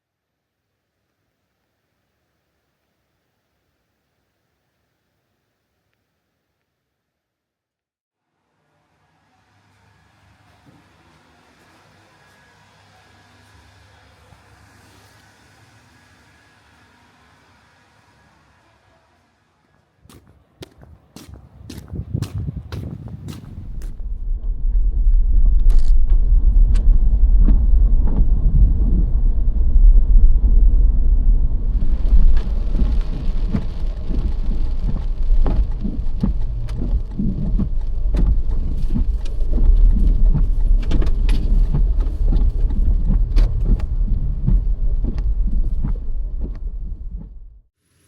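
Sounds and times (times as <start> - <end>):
hiss: 10.4 - 19.4
vehicle low rumble: 10.4 - 47.7.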